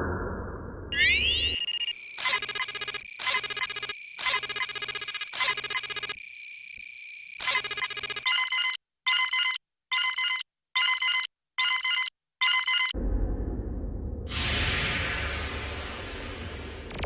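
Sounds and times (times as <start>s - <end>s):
electronic ringing tone: 1.0s - 13.0s.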